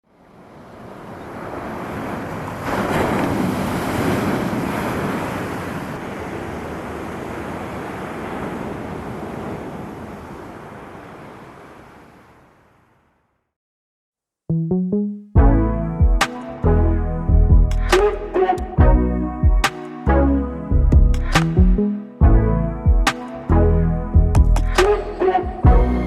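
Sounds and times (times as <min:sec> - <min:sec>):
ocean wave breaking: 0:00.2 - 0:12.8.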